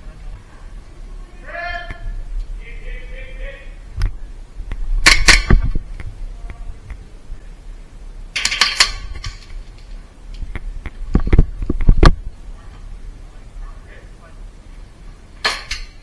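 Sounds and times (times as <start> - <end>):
sharp clicks and knocks: 8.4 - 12.2, 15.4 - 16.0.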